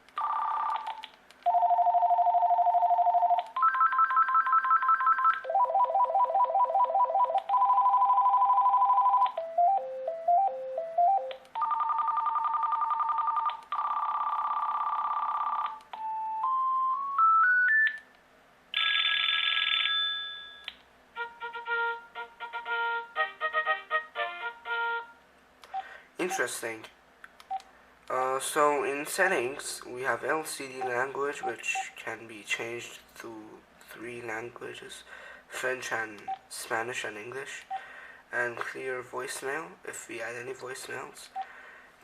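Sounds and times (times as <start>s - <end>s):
electronic phone ringtones: 0.2s - 18.0s, 18.8s - 25.1s.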